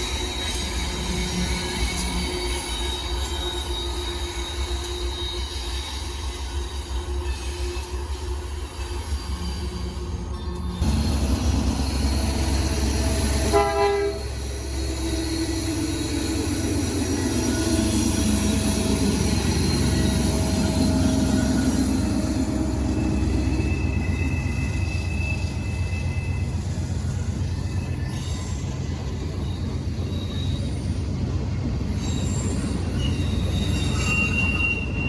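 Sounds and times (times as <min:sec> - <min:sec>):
diesel train rumbling: 0:00.0 - 0:35.0
train horn blast: 0:13.4 - 0:14.4
high squealing tones: 0:14.2 - 0:31.3, 0:31.9 - 0:35.0.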